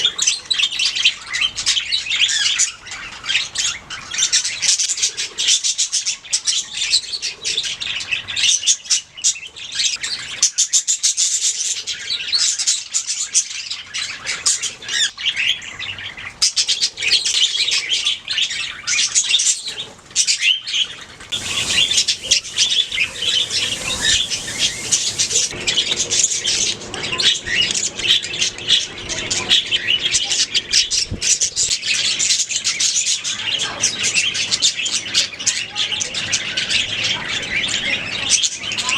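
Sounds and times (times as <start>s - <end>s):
budgerigars chirping: 21.3s - 31.0s.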